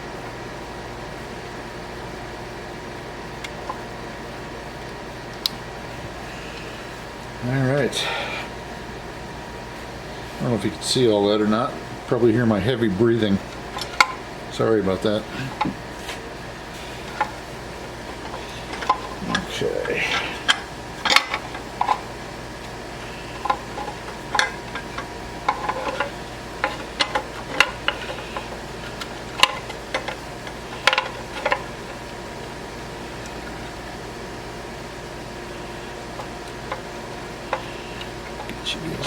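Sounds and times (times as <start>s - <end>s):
steady background hum: 0.0s - 39.0s
hands handling wiring connectors: 15.5s - 32.2s.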